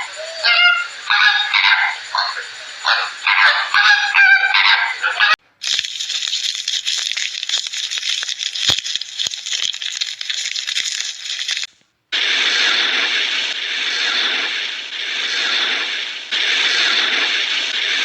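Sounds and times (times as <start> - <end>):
birds honking: 0.0 - 5.4
flock chatter: 0.0 - 5.4
small clicks: 5.6 - 11.9.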